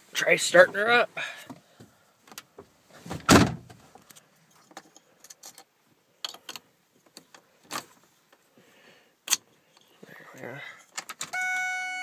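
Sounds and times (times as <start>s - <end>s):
truck door shutting: 3.1s - 3.7s.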